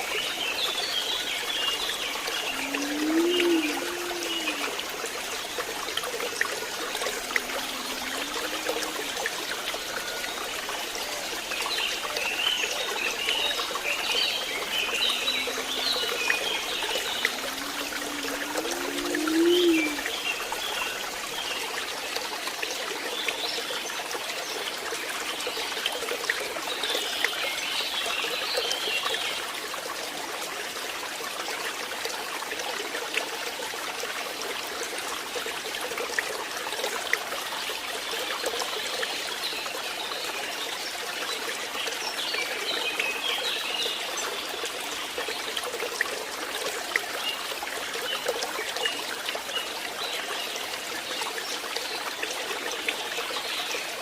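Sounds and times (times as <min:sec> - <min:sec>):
stream trickling and babbling: 0:00.0 - 0:54.0.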